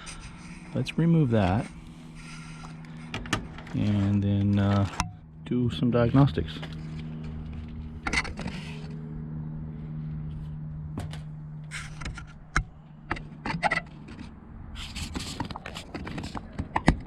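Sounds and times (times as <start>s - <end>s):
steady low hum: 0.0s - 17.0s
hands and tools clicking and scraping: 1.4s - 5.1s, 11.0s - 17.0s.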